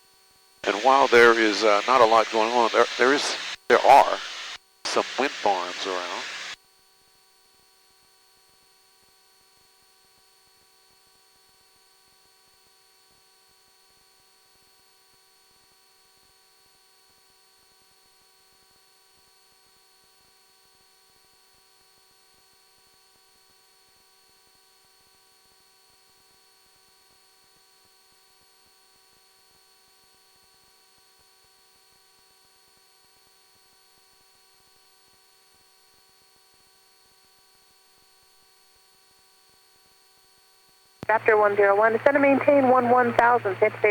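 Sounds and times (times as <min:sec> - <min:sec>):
faint electrical hum and whine: 0:00.6 - 0:06.6, 0:41.1 - 0:43.9
light hiss: 0:00.6 - 0:06.6.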